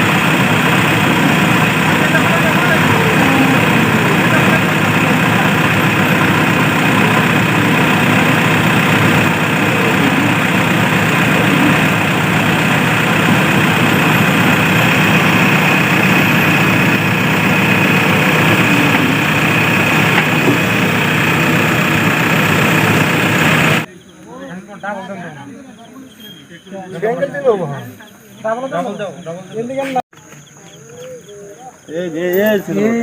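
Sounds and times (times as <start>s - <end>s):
diesel engine running: 0.0s - 23.9s.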